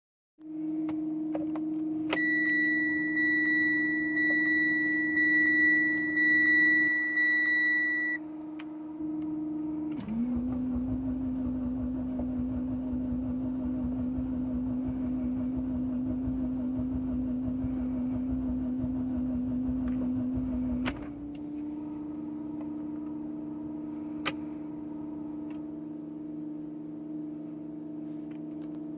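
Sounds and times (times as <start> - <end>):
steady hum: 0.4 - 28.9
high warning beep: 2.2 - 8.2.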